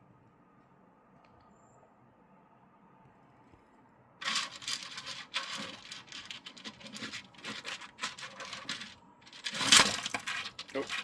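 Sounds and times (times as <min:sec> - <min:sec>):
hard plastic pieces rattling: 0:04.2 - 0:11.0.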